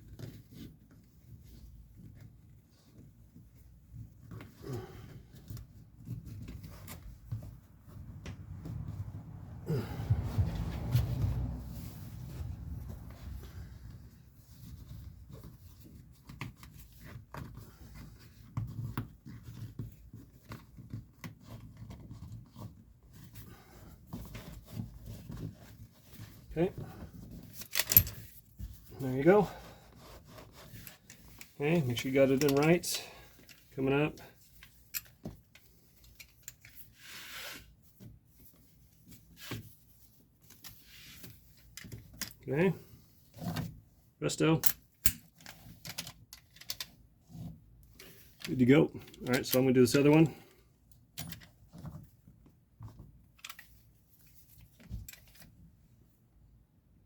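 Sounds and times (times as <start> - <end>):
seat belt webbing swishing: 8.0 - 16.2
seatbelt clicks and rustles: 27.4 - 28.3, 44.7 - 47.0, 53.3 - 55.6.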